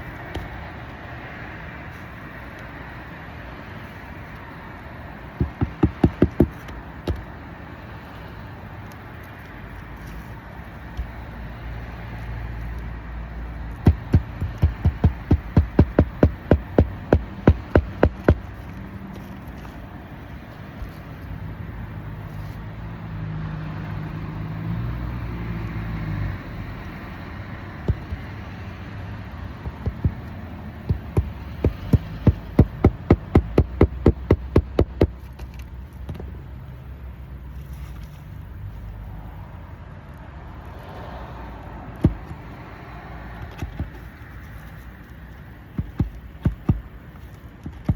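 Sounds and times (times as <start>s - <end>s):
hammer striking nails: 5.4s - 7.2s, 13.8s - 18.5s, 27.8s - 28.3s, 29.6s - 35.2s, 45.8s - 46.9s.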